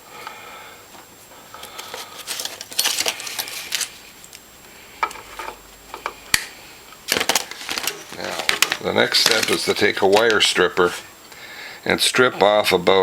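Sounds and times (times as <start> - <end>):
metal tools scraping and clinking: 1.7 - 4.0.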